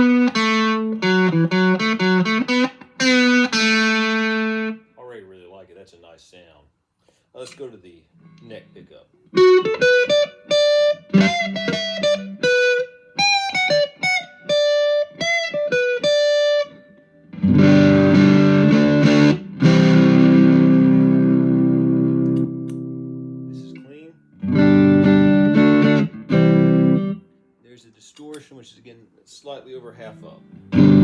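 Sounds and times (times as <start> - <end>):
distorted electric guitar: 0.0 - 4.8, 9.4 - 23.8, 24.4 - 27.2, 30.4 - 31.0.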